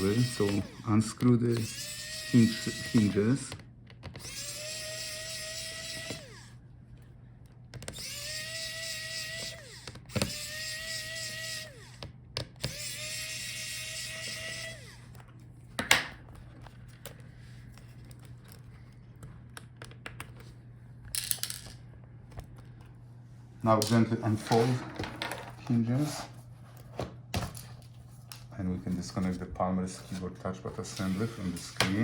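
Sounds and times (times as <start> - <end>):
electric screwdriver motor whine: 0.0 - 6.6, 7.8 - 15.2.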